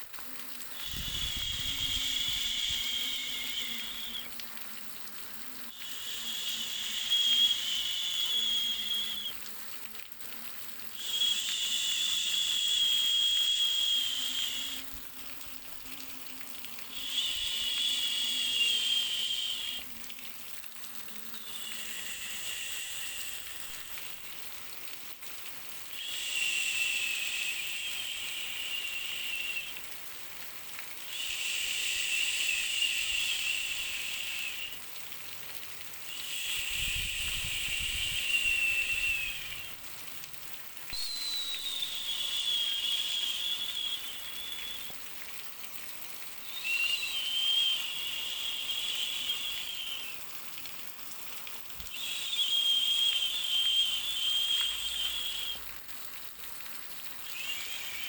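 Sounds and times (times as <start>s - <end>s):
hissing white noise: 0.0s - 9.6s, 10.3s - 24.4s, 25.8s - 30.0s, 30.9s - 34.8s, 36.0s - 39.8s, 40.9s - 45.1s, 46.4s - 50.2s.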